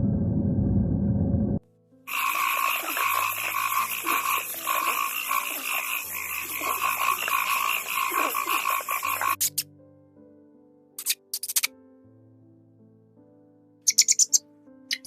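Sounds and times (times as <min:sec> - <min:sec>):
frogs croaking: 0:02.1 - 0:09.4.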